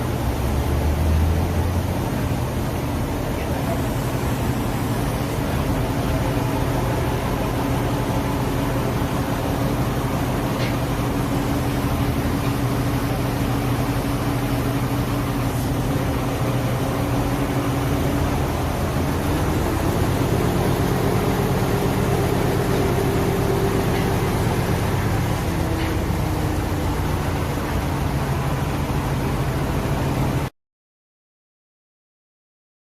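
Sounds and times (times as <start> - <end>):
heavy machinery engine running: 0.0 - 30.5.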